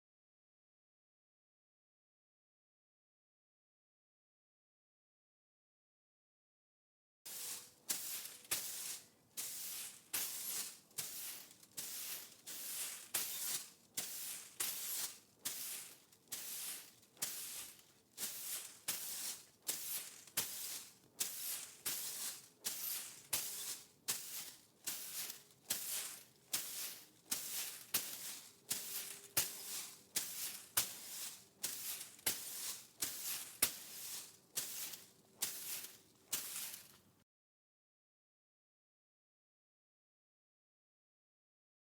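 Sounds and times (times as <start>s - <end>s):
broom sweeping concrete floor: 7.3s - 37.1s.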